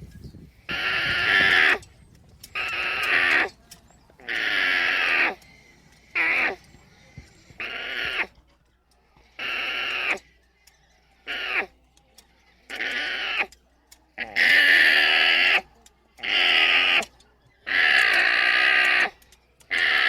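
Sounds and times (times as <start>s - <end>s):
alpaca high-pitched calls: 0.7s - 8.4s, 9.2s - 13.6s, 14.2s - 20.0s.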